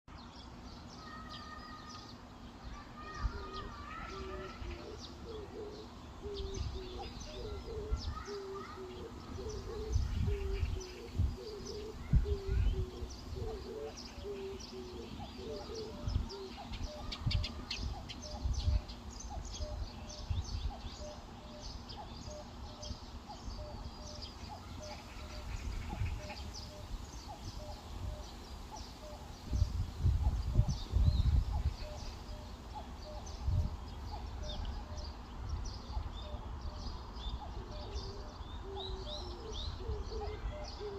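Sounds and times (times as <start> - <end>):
birds chirping and twittering: 0.1 - 40.9
repeated low bird notes: 3.0 - 40.9
wind buffeting microphone: 6.2 - 40.9.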